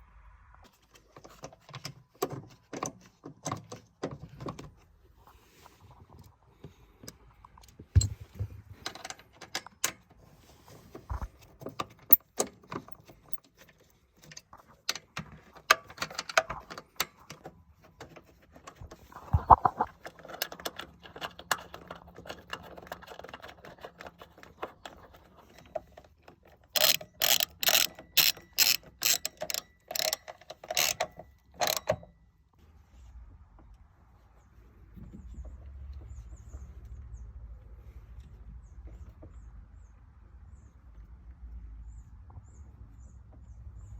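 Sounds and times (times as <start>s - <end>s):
metallic clicks and knocks: 11.1s - 32.1s
sharp ratcheting clicks: 26.7s - 32.0s.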